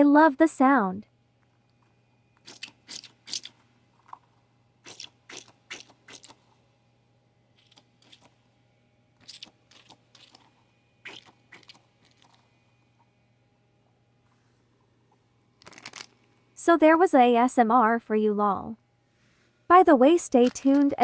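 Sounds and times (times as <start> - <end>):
plastic packaging crinkling: 15.6 - 16.2.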